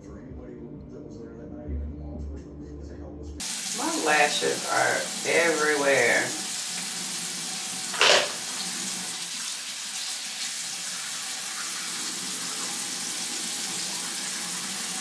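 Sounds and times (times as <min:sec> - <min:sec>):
tap water running into sink: 0:03.4 - 0:15.0
water splash: 0:07.9 - 0:08.6.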